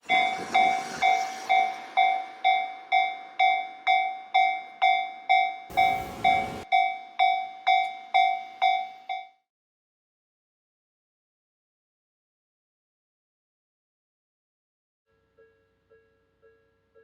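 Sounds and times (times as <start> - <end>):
passing train rumble: 0.0 - 9.2
level crossing bell ringing: 0.1 - 9.4.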